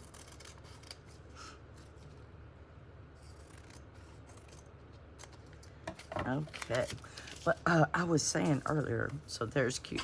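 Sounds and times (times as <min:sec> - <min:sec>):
scissors snipping paper: 0:00.0 - 0:01.2, 0:03.2 - 0:05.5.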